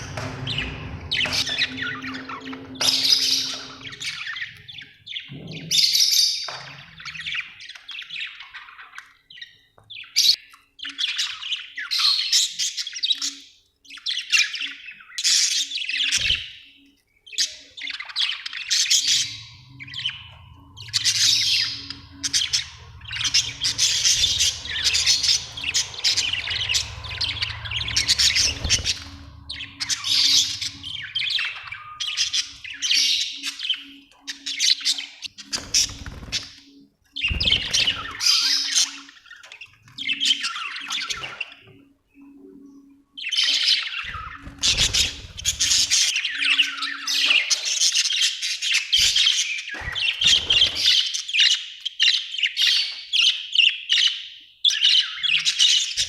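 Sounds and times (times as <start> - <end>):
low steady hum: 0.0 - 4.9, 18.7 - 34.5
budgerigars chirping: 0.0 - 56.0.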